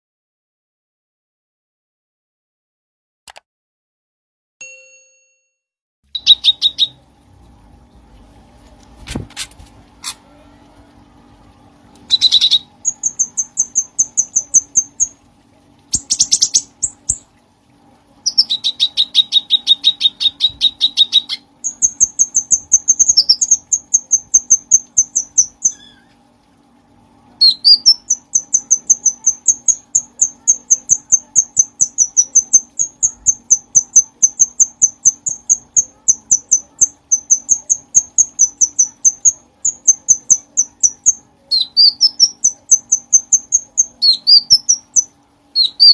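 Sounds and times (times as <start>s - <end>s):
faint steady hum: 6.1s - 45.9s
bird chirping rapidly: 6.2s - 7.0s, 12.1s - 15.2s, 15.9s - 17.3s, 18.2s - 26.2s, 27.4s - 45.9s.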